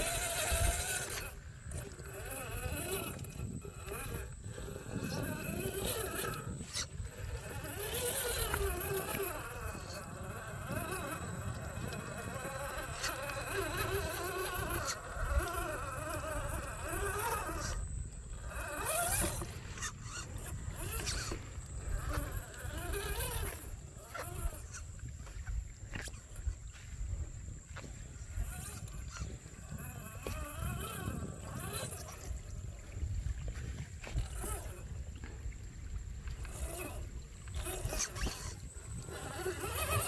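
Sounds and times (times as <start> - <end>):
electric motor whining: 0.0 - 26.8, 27.8 - 32.8, 36.4 - 40.0.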